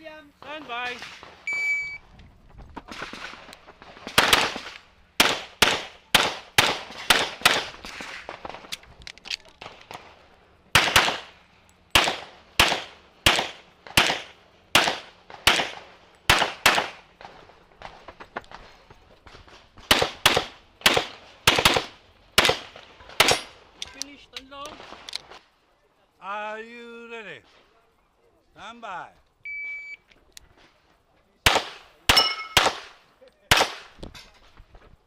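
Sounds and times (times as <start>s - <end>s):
pistol shots in quick pairs: 4.0s - 8.6s, 10.7s - 17.0s, 19.9s - 23.5s, 31.4s - 34.0s.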